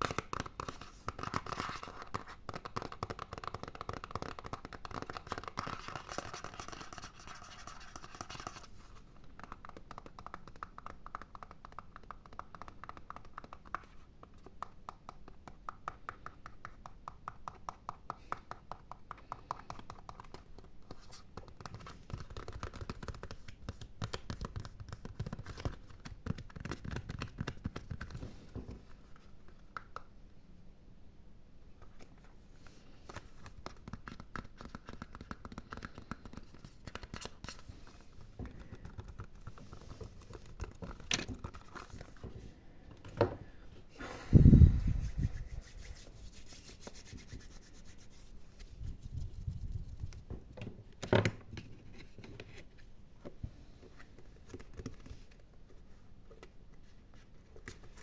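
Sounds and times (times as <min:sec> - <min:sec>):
fast close scratching: 0:44.4 - 0:50.2.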